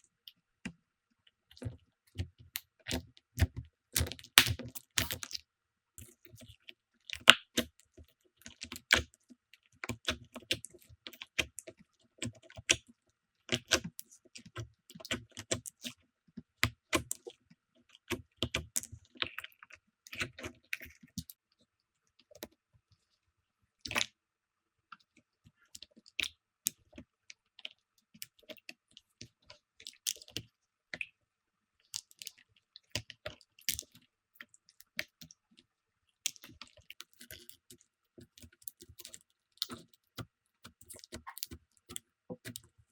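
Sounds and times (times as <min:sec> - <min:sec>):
sticky slime clicks and pops: 0:04.0 - 0:05.3.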